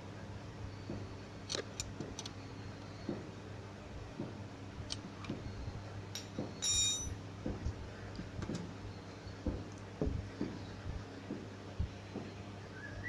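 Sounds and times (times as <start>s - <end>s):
low steady hum: 0.0s - 13.0s
metal clink: 6.2s - 7.2s.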